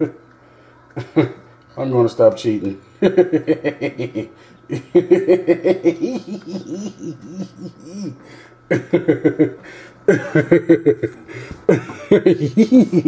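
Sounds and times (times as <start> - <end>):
man giggling: 3.0 - 13.0.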